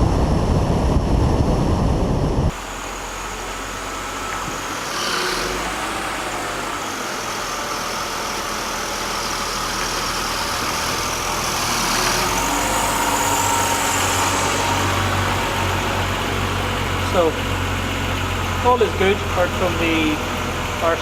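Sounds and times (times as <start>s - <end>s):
car engine running: 0.0s - 21.0s.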